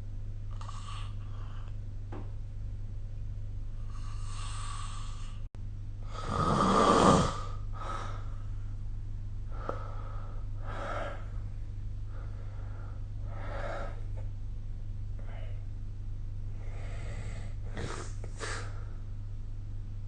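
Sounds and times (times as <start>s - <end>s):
steady low hum: 0.0s - 20.0s
person snoring: 3.8s - 5.4s, 6.0s - 8.3s.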